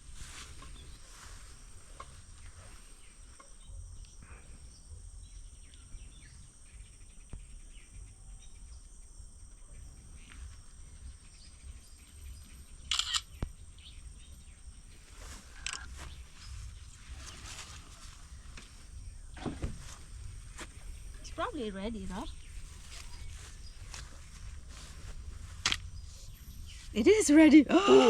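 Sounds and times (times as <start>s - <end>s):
handling ticks and rustles: 0.0s - 4.2s, 10.2s - 27.2s.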